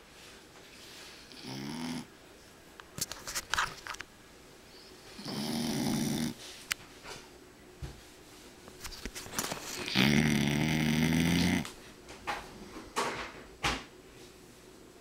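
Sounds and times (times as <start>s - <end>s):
puppy snoring: 1.2s - 2.1s, 5.1s - 6.4s, 9.8s - 11.7s.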